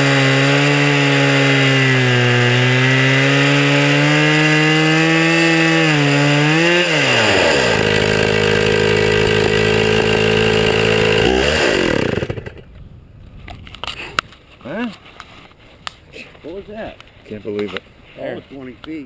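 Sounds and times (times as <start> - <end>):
chainsaw engine running: 0.0 - 12.6.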